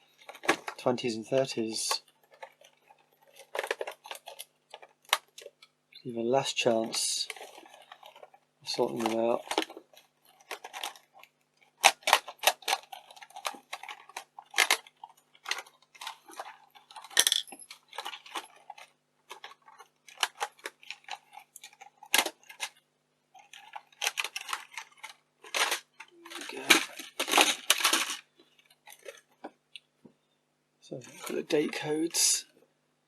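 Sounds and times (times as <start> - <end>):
small parts clicking and rattling: 0.1 - 5.7, 6.6 - 29.9.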